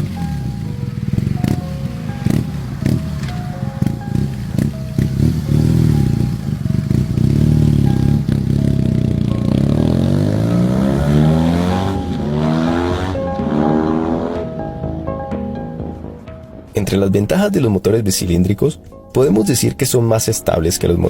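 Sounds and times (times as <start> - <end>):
motorcycle engine revving: 0.0 - 16.3
background music: 0.0 - 21.0.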